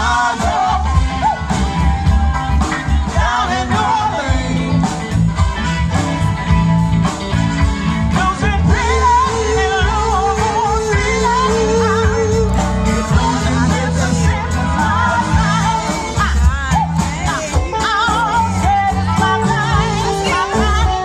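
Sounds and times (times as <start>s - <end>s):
live blues band playing: 0.0s - 21.0s.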